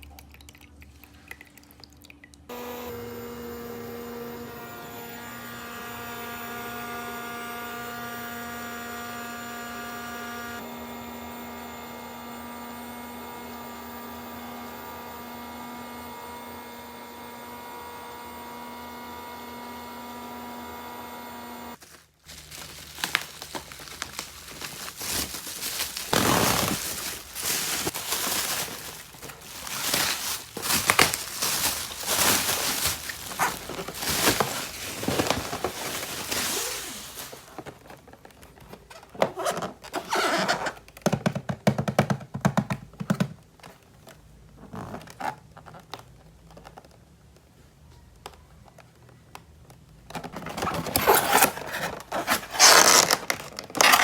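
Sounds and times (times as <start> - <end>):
plastic packaging rustling and tearing: 21.8 - 41.0, 50.1 - 54.0.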